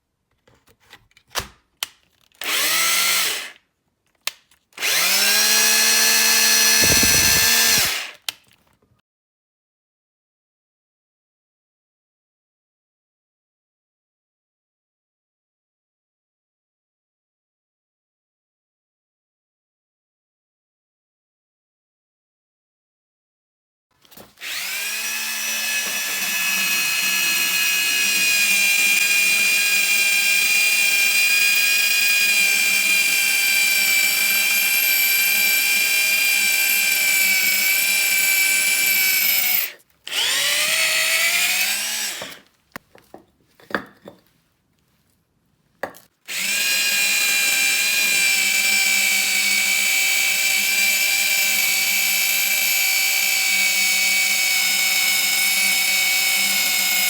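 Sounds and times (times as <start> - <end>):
cordless drill whining: 2.4 - 3.6, 4.8 - 8.2, 24.4 - 42.5, 46.3 - 57.0.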